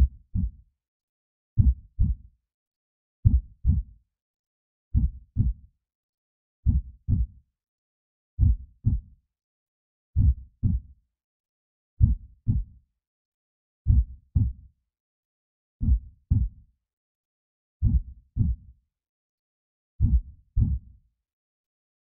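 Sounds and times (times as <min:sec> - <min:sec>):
heartbeat thumps: 0:03.3 - 0:03.8, 0:05.0 - 0:05.5, 0:06.7 - 0:07.3, 0:08.4 - 0:09.0, 0:10.2 - 0:10.8.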